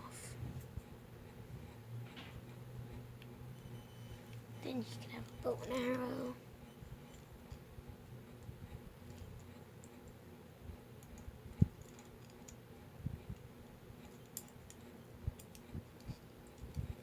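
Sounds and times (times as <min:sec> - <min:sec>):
plastic toy parts clicking: 0:05.1 - 0:06.1, 0:14.0 - 0:16.9.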